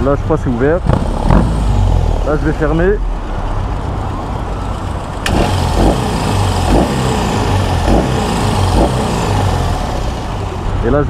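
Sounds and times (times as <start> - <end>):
motorcycle engine rumbling: 0.0 - 11.0.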